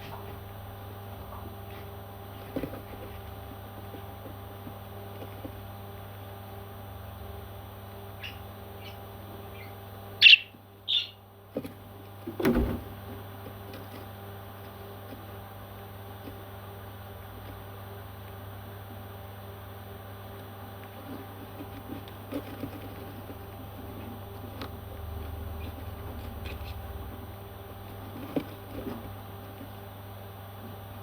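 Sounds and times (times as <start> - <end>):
baby parrots chirping: 8.2 - 11.2
loud high parrot calls: 9.6 - 11.2.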